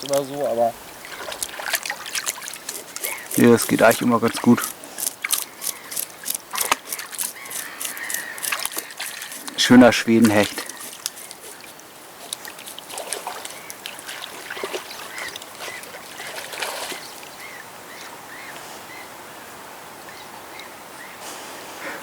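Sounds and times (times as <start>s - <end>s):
bird chirping: 0.0s - 12.8s, 13.4s - 19.1s
scraping and clicking cleaning fish: 1.1s - 17.3s.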